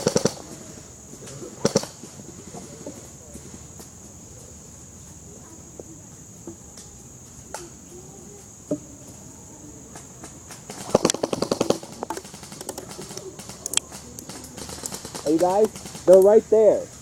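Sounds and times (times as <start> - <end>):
rapid airsoft gunfire burst: 0.0 - 0.4, 1.6 - 2.0, 10.7 - 16.3
airsoft gun clicks: 10.5 - 16.3.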